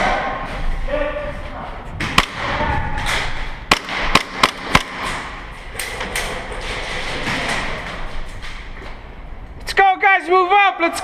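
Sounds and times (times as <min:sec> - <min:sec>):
airsoft gunfire cracks: 0:02.2 - 0:02.5, 0:03.7 - 0:05.3.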